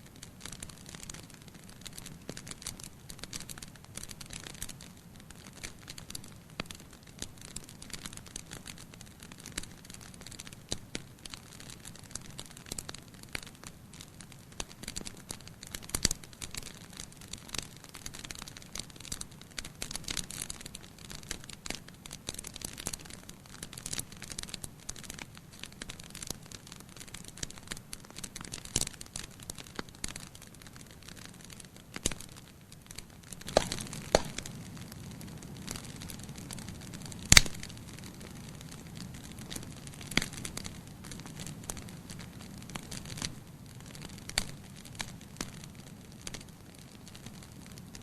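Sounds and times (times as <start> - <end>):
campfire crackling: 0.0 - 48.0.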